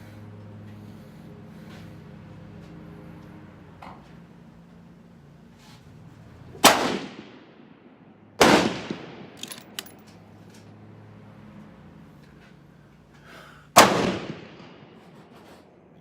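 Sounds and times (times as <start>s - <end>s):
rifle shots: 6.6s - 9.9s, 13.8s - 15.0s.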